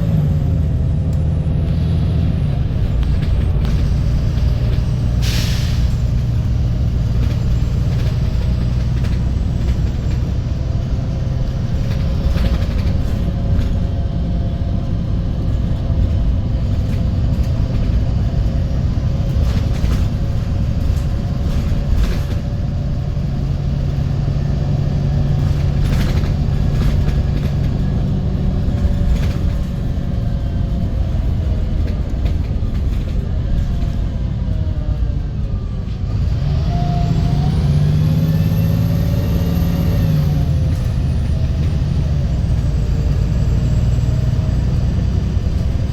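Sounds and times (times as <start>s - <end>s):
bus engine droning: 0.0s - 45.9s
short air hiss: 5.2s - 6.0s.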